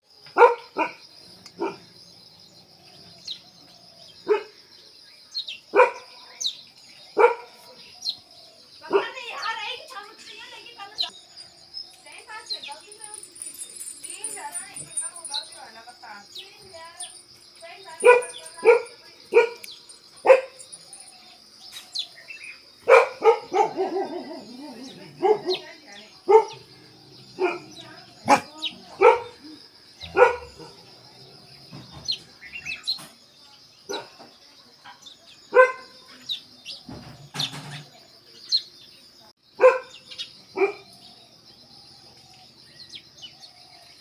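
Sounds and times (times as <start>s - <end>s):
dog barking: 0.4s - 1.0s, 1.6s - 1.8s, 4.3s - 4.5s, 5.7s - 6.2s, 7.2s - 7.8s, 18.0s - 20.7s, 22.8s - 26.7s, 27.3s - 29.4s, 30.1s - 30.9s, 33.9s - 34.2s, 35.5s - 36.0s, 39.6s - 40.0s, 40.6s - 40.9s
high-pitched insect drone: 9.2s - 22.6s.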